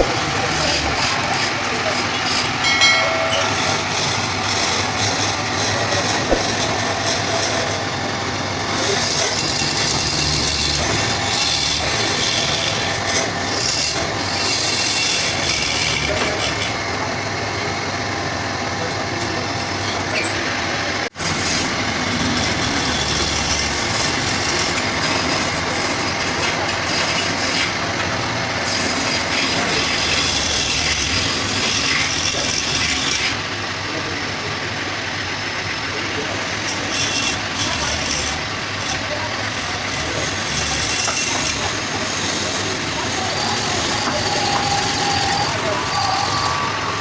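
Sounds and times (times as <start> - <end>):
wood lathe cutting wood: 8.7 - 16.8, 21.4 - 33.7, 36.2 - 47.0.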